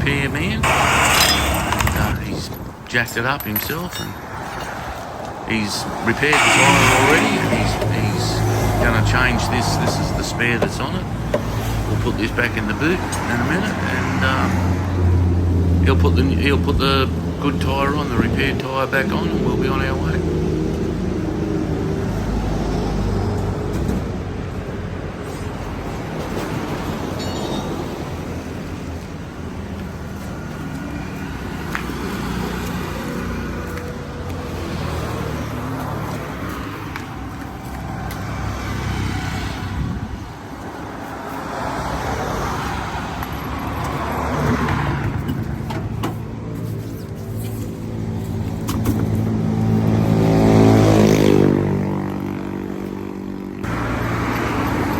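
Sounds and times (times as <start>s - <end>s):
large vehicle engine humming: 0.0s - 4.3s, 5.2s - 27.2s
passing road traffic: 0.0s - 54.9s.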